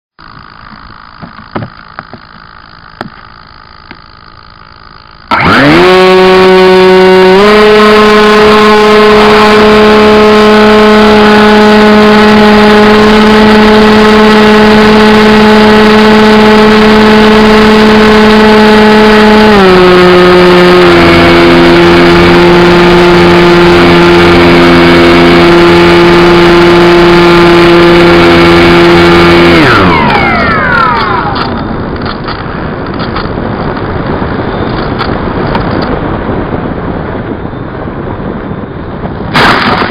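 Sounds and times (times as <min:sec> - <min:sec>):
model plane electric motor and propeller: 0:00.2 - 0:39.9.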